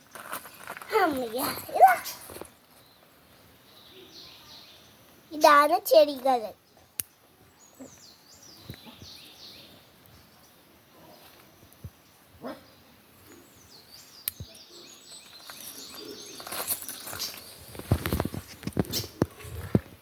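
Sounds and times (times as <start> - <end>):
scuffing and rustling: 0.0 - 3.0, 15.2 - 20.0
birds chirping: 0.0 - 19.8.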